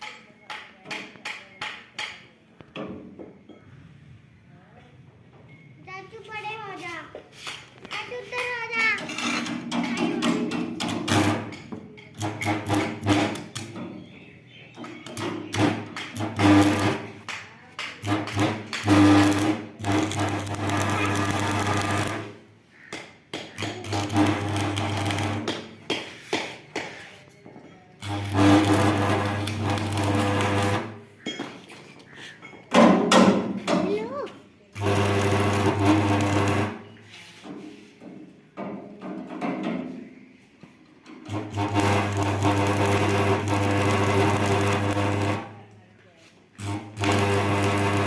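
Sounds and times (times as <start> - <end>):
arc welding buzz and crackle: 10.8 - 11.6, 12.2 - 13.7, 15.0 - 17.4, 18.0 - 22.9, 23.5 - 25.7, 28.0 - 31.0, 34.8 - 36.9, 41.2 - 45.6, 46.6 - 48.0.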